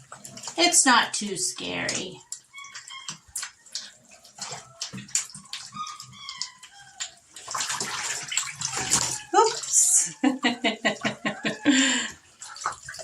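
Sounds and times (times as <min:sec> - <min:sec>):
water splashing in a bathtub: 0:00.0 - 0:13.0
puppy whimpering: 0:09.1 - 0:12.0.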